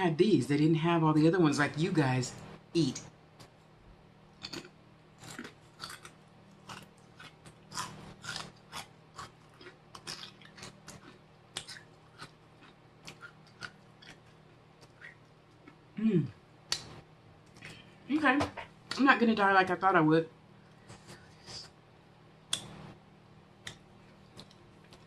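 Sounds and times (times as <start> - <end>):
person chewing crunchy chips: 4.4 - 16.0.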